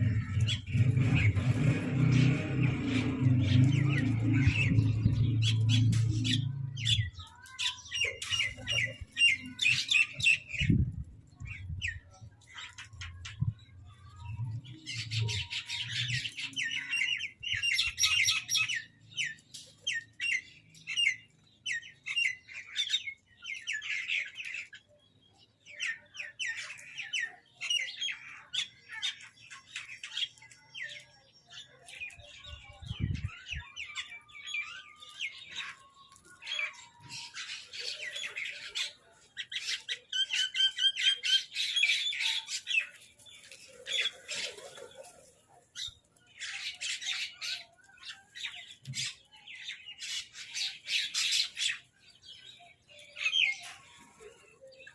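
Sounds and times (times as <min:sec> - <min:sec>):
crows and mynahs squawking: 0:00.0 - 0:10.7.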